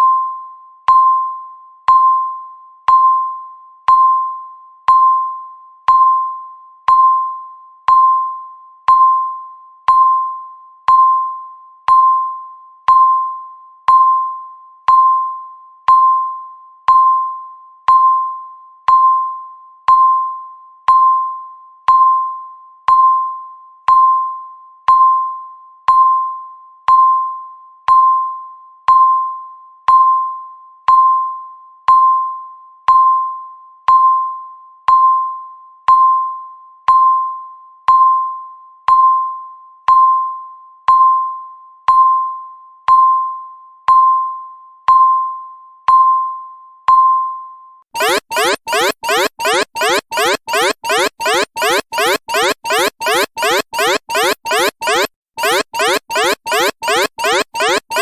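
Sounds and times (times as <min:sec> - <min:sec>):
timer beeps: 0:48.0 - 0:58.0.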